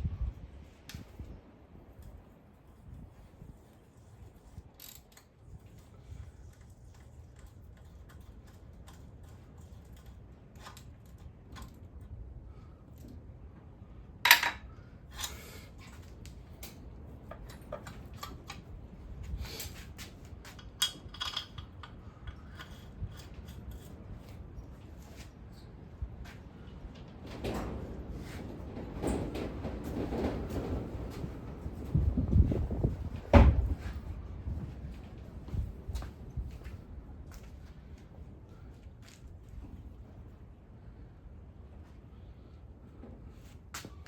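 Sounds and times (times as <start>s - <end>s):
tools and engine parts clinking: 4.8s - 11.9s, 14.3s - 18.7s, 19.4s - 23.9s.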